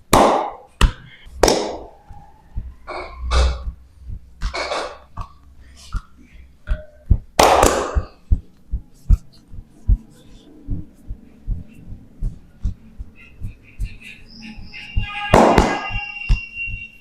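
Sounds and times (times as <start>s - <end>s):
dull low thumps: 2.5s - 4.6s, 6.3s - 14.0s.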